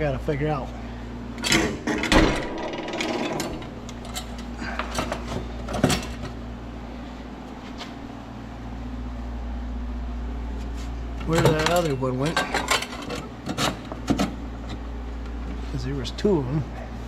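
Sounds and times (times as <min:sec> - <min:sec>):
steady low hum: 0:00.0 - 0:17.0
parts clicking and rustling: 0:01.4 - 0:06.4, 0:11.2 - 0:14.8.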